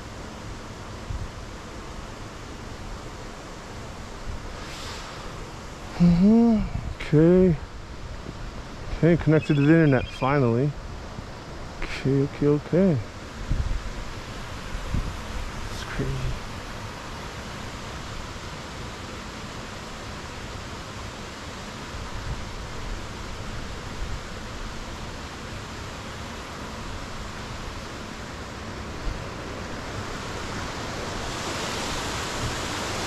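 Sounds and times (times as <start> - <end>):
steady rushing noise: 0.0 - 20.3.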